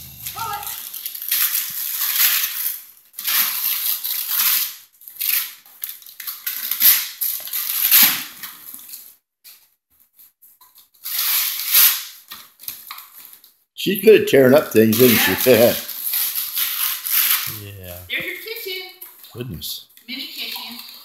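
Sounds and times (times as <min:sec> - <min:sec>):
wrapping paper tearing: 0:00.0 - 0:09.1, 0:11.0 - 0:13.4, 0:14.8 - 0:17.9.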